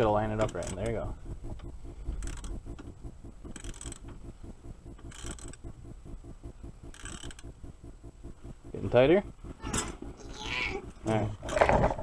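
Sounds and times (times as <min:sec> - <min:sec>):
faint rapid ticking: 0:00.0 - 0:11.4
ratchet wrench clicking: 0:02.2 - 0:02.5, 0:03.5 - 0:04.0, 0:05.0 - 0:05.6, 0:06.9 - 0:07.4.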